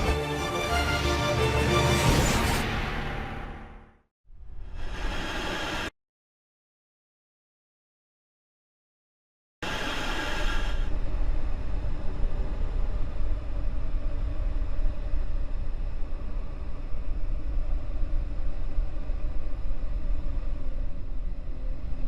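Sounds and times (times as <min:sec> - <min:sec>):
steady low rumble: 0:10.9 - 0:22.0.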